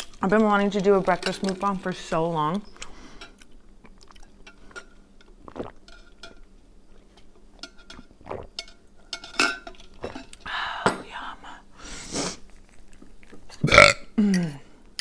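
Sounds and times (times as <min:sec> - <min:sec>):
cutlery clinking on a plate: 0:07.6 - 0:10.3.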